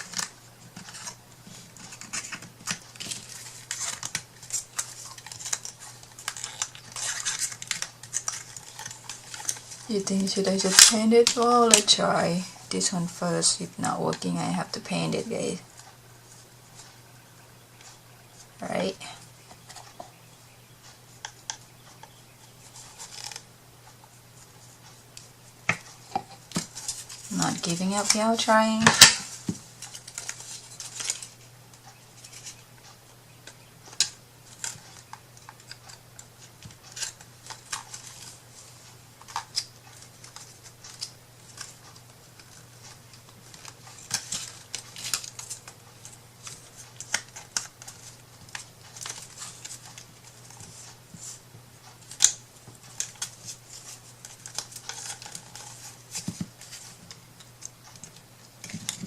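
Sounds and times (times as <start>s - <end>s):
faint steady hum: 0.0s - 59.0s.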